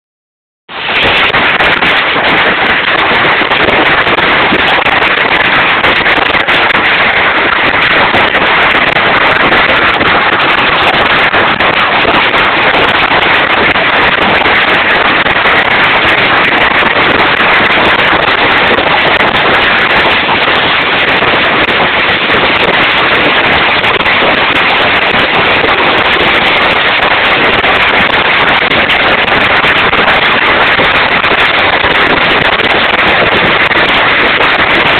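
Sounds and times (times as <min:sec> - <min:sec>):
hailstones pelting down: 0:00.8 - 0:34.9.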